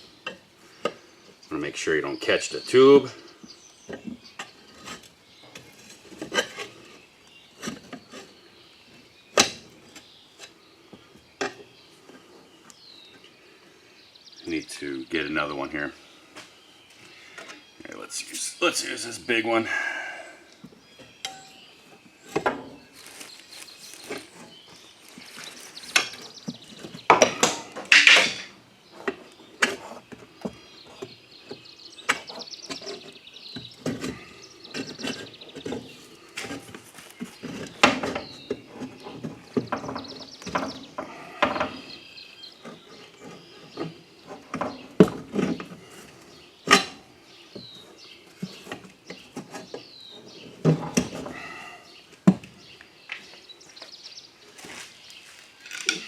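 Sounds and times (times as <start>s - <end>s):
rubber tire scraping and squeaking: 1.7s - 13.2s, 20.7s - 51.7s
pry bars clinking on metal: 27.4s - 28.5s.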